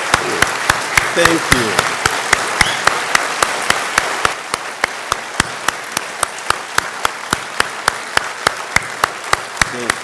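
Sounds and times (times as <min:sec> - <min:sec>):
crowd clapping: 0:00.0 - 0:10.0
loud rhythmic claps: 0:00.0 - 0:10.0.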